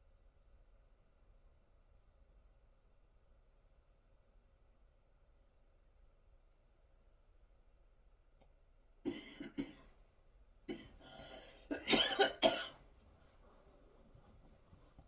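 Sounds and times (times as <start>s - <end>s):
person coughing: 9.1s - 9.9s, 10.7s - 12.8s.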